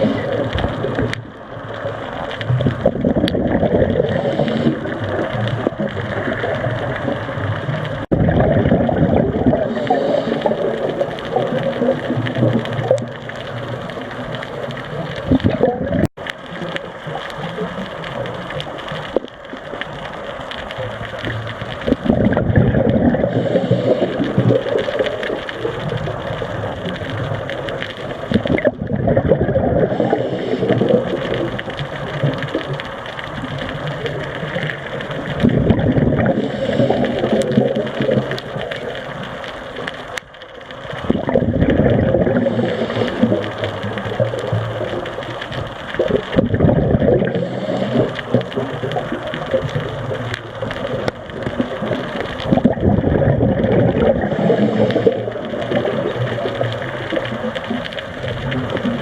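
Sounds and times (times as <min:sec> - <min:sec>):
scuba regulator bubbling exhale: 0:00.0 - 0:16.1, 0:21.1 - 0:39.4, 0:41.0 - 0:59.0
diver breathing through regulator: 0:03.8 - 0:05.0, 0:09.5 - 0:11.0, 0:23.2 - 0:24.7, 0:29.8 - 0:31.1, 0:36.2 - 0:37.6, 0:42.3 - 0:43.7, 0:47.2 - 0:48.4.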